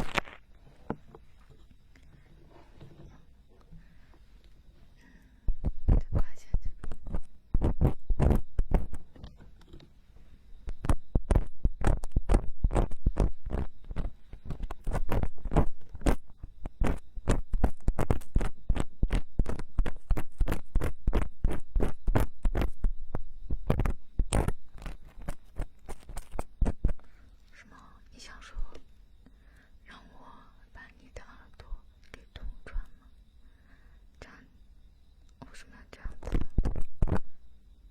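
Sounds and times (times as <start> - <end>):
tools scraping microphone ear: 10.7 - 22.8, 23.6 - 27.0.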